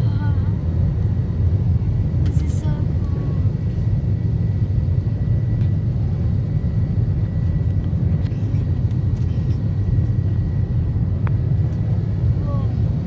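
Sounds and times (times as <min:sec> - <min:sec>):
airliner cabin engine rumble: 0:00.0 - 0:13.0.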